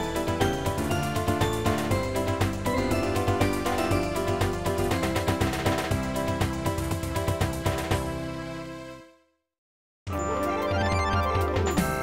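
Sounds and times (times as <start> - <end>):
quick percussion beat: 0.8 - 8.1.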